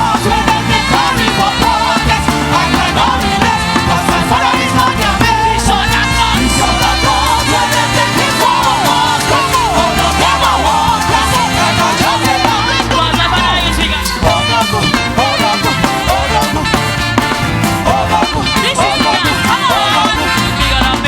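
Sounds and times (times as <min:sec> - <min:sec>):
bass: 0:00.0 - 0:21.0
percussion beat: 0:00.0 - 0:21.0
voices singing: 0:00.0 - 0:21.0.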